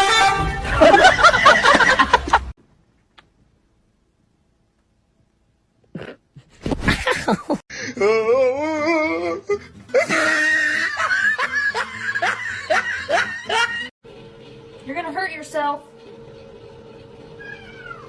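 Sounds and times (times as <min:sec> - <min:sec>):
music: 0:00.0 - 0:01.1, 0:08.3 - 0:17.4
person laughing hard: 0:00.8 - 0:02.5, 0:06.8 - 0:08.2, 0:09.9 - 0:13.9.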